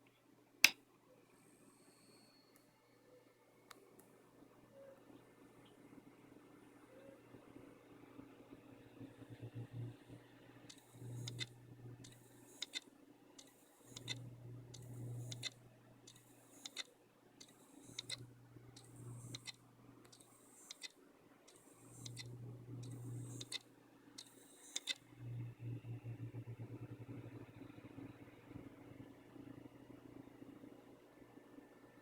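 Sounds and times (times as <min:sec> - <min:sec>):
low motor hum: 0:08.9 - 0:12.2, 0:25.1 - 0:30.2
hard drive clicking: 0:10.7 - 0:25.0.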